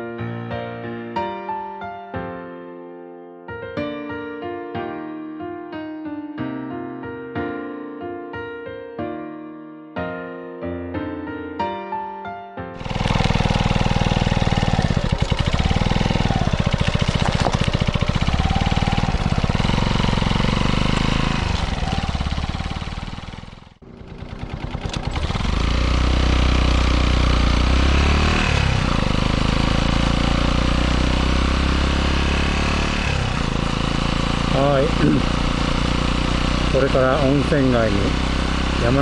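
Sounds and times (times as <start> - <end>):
motorcycle engine exhaust beat: 12.8 - 39.0.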